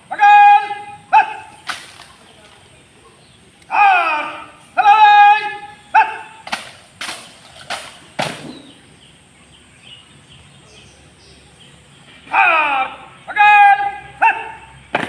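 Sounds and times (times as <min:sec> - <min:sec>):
person shouting command: 0:00.0 - 0:01.6, 0:03.7 - 0:06.4, 0:12.3 - 0:14.7
hands slapping rifles: 0:01.6 - 0:02.2, 0:06.4 - 0:08.6.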